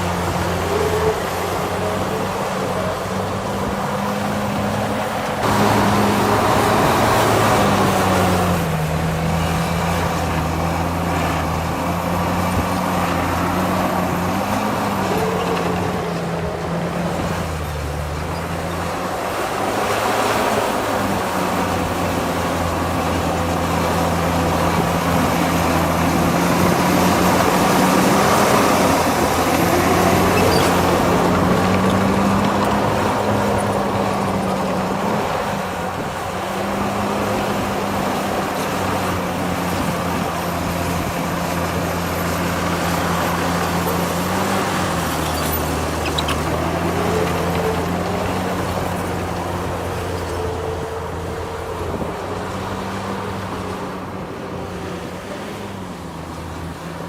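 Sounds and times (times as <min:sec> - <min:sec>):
heavy diesel engine running: 0:00.0 - 0:57.0.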